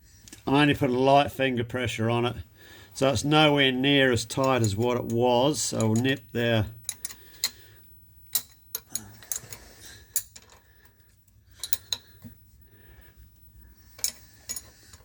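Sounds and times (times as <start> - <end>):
spanner clicking on bolts: 4.3 - 7.6, 8.3 - 10.5.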